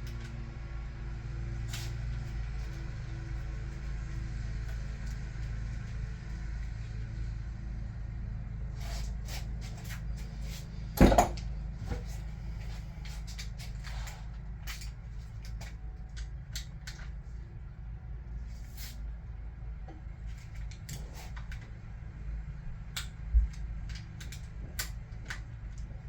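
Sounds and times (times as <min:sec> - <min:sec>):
steady low hum: 0:00.0 - 0:26.0
loud metal clunk: 0:11.0 - 0:11.4.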